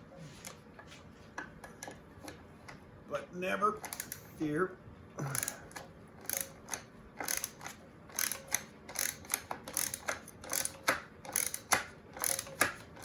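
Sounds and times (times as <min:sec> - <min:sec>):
ratchet wrench clicking: 0:03.8 - 0:04.3, 0:06.2 - 0:13.0.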